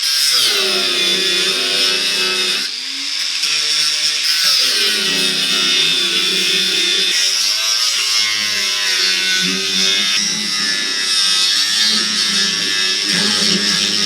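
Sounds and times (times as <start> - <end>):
power tool whining on metal: 0.0 - 14.0.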